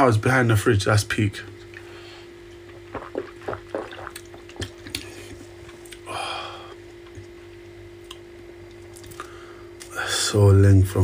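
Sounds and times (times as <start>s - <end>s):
low electrical hum: 0.0s - 11.0s
liquid pouring: 2.8s - 4.7s.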